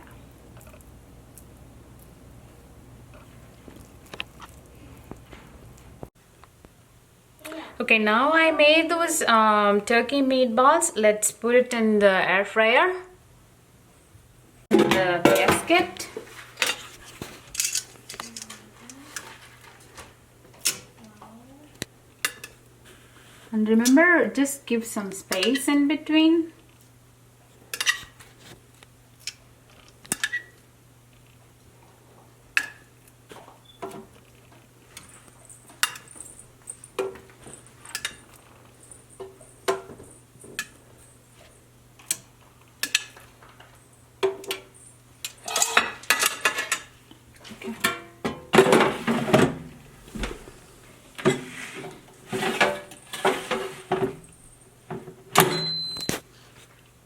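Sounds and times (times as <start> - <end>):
short electronic beep: 55.5 - 56.1.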